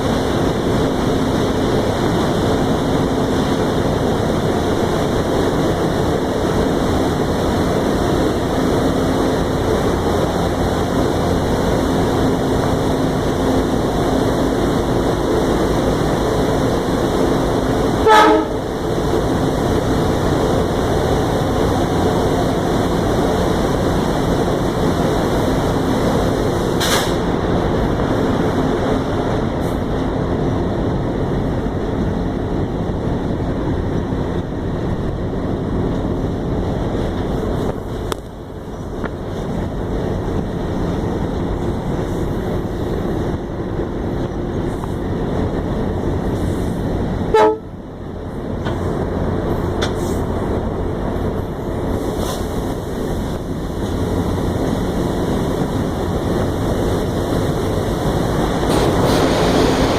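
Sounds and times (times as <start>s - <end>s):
diesel locomotive engine hum: 0.0s - 59.9s
rail noise: 0.0s - 59.9s
wind noise: 0.0s - 59.9s
locomotive horn toot: 18.0s - 18.7s, 47.3s - 47.8s.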